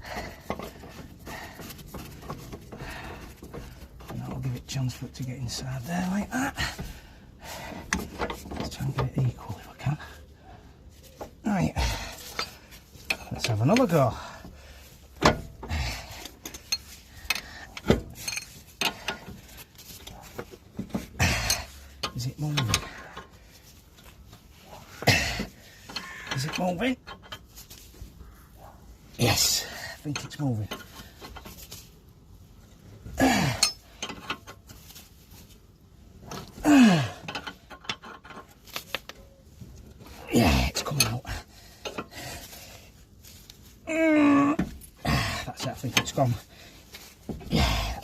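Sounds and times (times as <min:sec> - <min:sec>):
man grunting with effort: 0:25.0 - 0:25.5, 0:33.1 - 0:33.7, 0:36.6 - 0:37.3, 0:40.2 - 0:40.8, 0:43.9 - 0:45.5, 0:47.4 - 0:48.0
metallic clicks and knocks: 0:25.4 - 0:27.6, 0:37.2 - 0:40.1.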